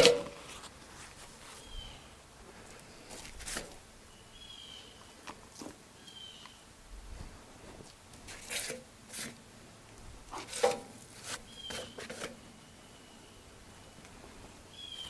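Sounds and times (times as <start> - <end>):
bird chirping: 4.1 - 5.2, 6.0 - 6.6, 11.5 - 14.0, 14.7 - 15.0
scrapes rustles and knocks: 10.3 - 12.4.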